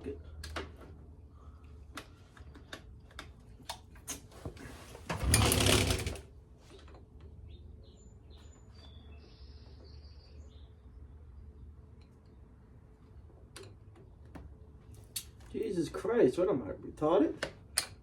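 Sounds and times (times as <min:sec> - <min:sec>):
small clicks of hands on wiring: 0:01.6 - 0:04.3.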